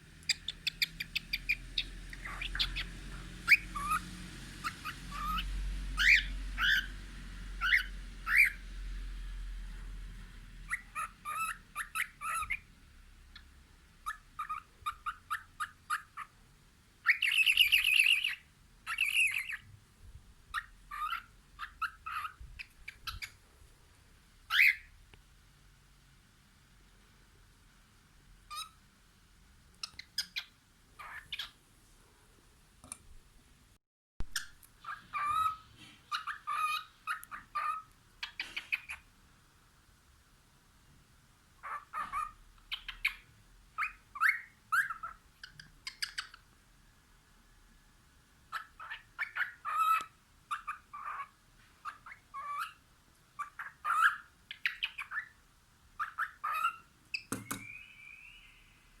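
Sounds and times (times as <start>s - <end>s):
cockatiel chirping and whistling: 0.2s - 7.0s, 7.6s - 8.6s, 10.6s - 12.7s, 13.3s - 16.3s, 17.0s - 19.7s, 20.5s - 23.4s, 24.5s - 24.9s, 28.5s - 28.8s, 29.8s - 31.6s, 34.3s - 39.0s, 41.6s - 46.5s, 48.5s - 52.8s, 53.4s - 55.4s, 56.0s - 59.0s.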